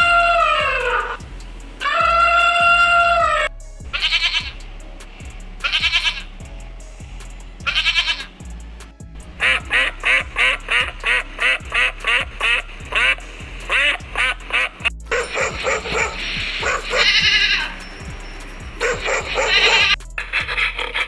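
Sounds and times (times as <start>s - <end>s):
background music: 0.0s - 21.0s
goat bleating: 1.8s - 4.5s, 5.6s - 6.3s, 7.6s - 8.3s, 15.3s - 17.7s
duck quacking: 9.4s - 17.7s, 18.8s - 21.0s.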